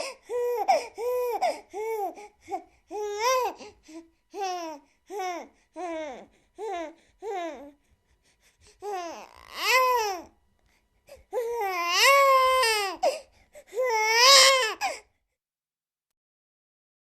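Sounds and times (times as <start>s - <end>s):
infant crying: 0.0s - 7.8s, 8.8s - 10.4s, 11.1s - 15.1s.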